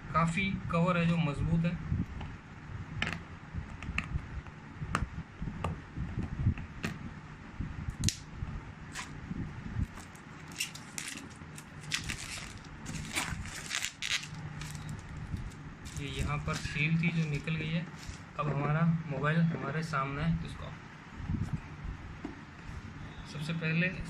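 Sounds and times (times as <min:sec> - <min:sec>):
faint low hum: 0:00.0 - 0:24.0
cardboard box rustling and crackling: 0:09.9 - 0:18.3.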